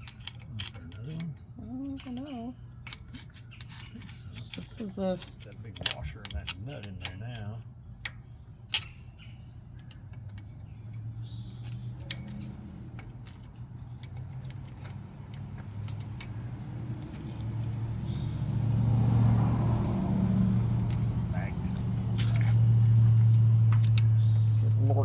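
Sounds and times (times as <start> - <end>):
low motor hum: 9.6 - 25.0.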